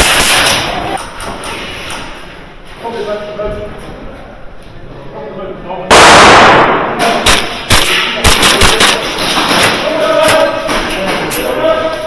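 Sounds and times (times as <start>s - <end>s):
loud blast: 5.9s - 8.9s
airsoft gunfire cracks: 5.9s - 9.0s.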